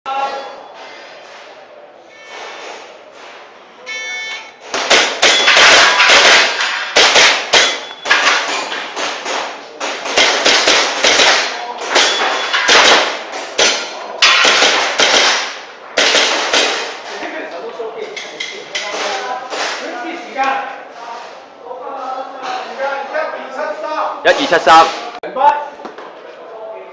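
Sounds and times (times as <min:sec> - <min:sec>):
electronic timer beep: 0:03.8 - 0:04.6
airsoft pistol shots: 0:14.4 - 0:16.9.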